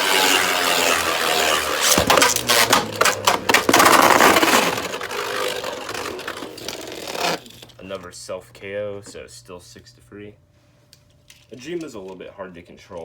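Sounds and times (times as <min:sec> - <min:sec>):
spinning tops clacking: 0:00.0 - 0:07.7
spinning tops whirring: 0:00.0 - 0:07.8.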